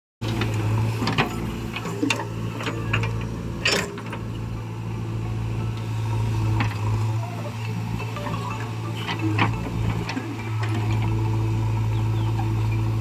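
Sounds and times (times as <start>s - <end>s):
diesel engine running: 0.2s - 13.0s.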